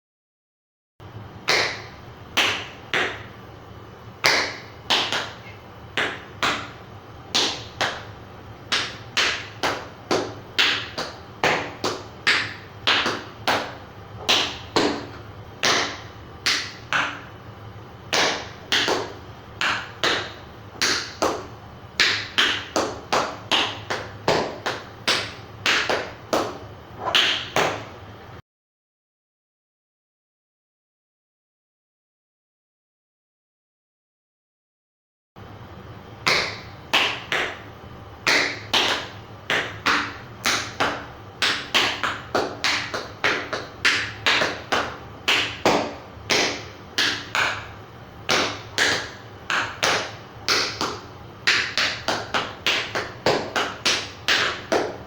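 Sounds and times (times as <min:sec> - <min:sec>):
tap shoes clicking on hard floor: 0:04.2 - 0:08.1, 0:08.7 - 0:17.3, 0:18.1 - 0:27.9, 0:38.3 - 0:47.7, 0:48.3 - 0:55.0.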